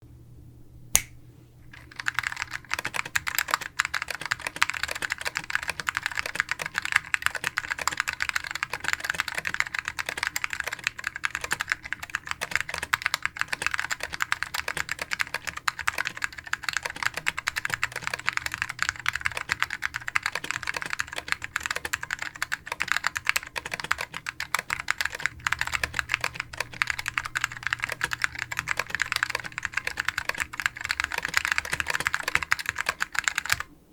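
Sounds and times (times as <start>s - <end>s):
single key click: 1.0s - 1.2s
fast typing on keyboard: 1.8s - 33.7s.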